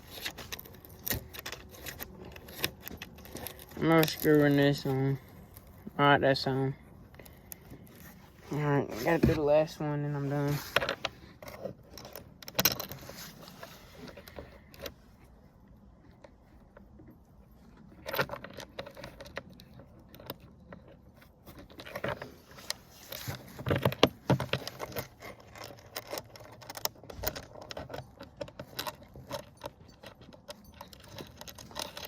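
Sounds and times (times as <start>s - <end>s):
metallic clicks and jangling: 0.0s - 5.9s, 21.7s - 32.0s.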